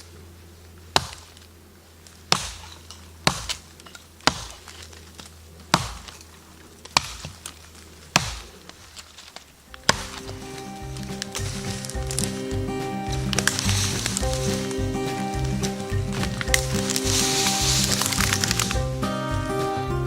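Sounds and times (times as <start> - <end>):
wood chopping strikes: 0.9 - 1.5, 2.3 - 18.9.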